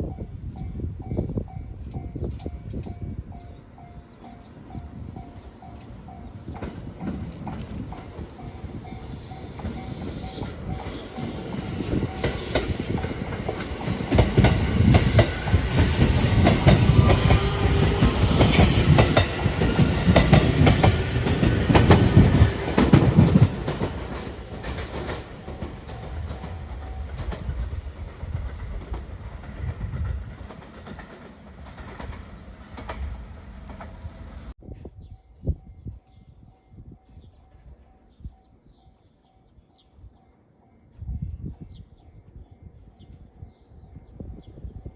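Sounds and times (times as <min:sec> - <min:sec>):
electric train passing: 0:00.3 - 0:34.6.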